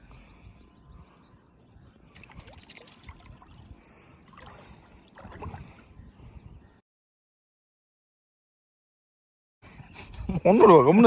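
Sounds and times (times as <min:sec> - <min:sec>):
water sloshing and trickling: 0:02.1 - 0:06.3
water splashing: 0:02.2 - 0:05.9.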